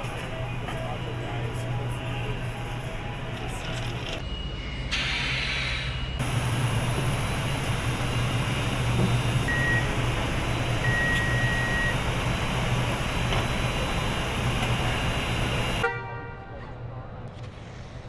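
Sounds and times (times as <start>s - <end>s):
factory machinery hum: 0.0s - 18.0s
electronic beep: 9.5s - 9.9s, 10.8s - 12.0s.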